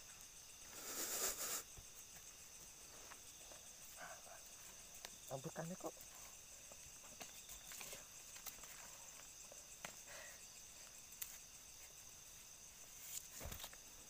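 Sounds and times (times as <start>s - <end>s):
night insects chirring: 0.0s - 14.0s
soft clicks and rustles: 7.0s - 10.0s.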